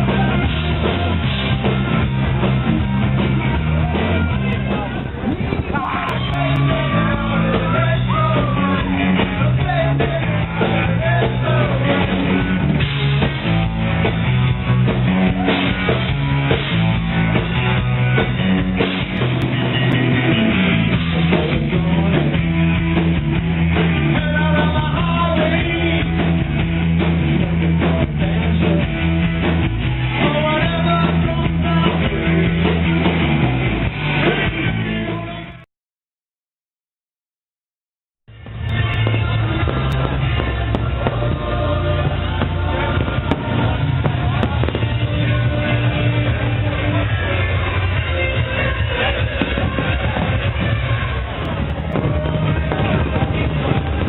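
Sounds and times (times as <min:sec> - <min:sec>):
drum kit: 0:00.0 - 0:35.6, 0:38.3 - 0:54.0
electric guitar: 0:00.0 - 0:35.6
rock song with singer: 0:00.0 - 0:35.6, 0:38.3 - 0:54.0
bass: 0:00.0 - 0:35.7, 0:38.3 - 0:54.0.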